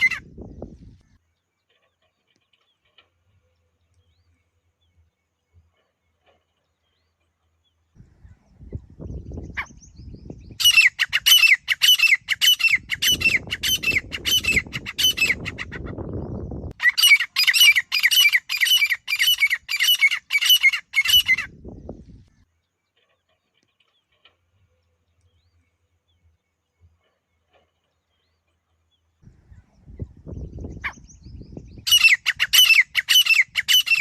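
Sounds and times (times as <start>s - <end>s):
francolin calling: 10.5s - 16.1s, 16.7s - 21.5s, 30.6s - 34.0s.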